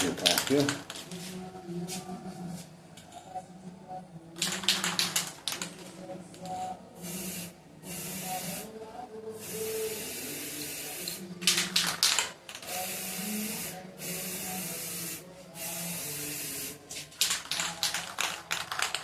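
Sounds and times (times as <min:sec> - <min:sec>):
spray paint hissing: 0:07.0 - 0:08.7, 0:09.4 - 0:18.7.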